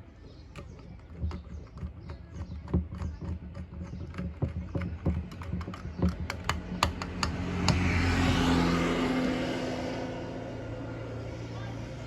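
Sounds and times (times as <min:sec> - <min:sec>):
vehicle engine: 0:00.0 - 0:12.0
small clicks and taps of parts: 0:00.5 - 0:07.9.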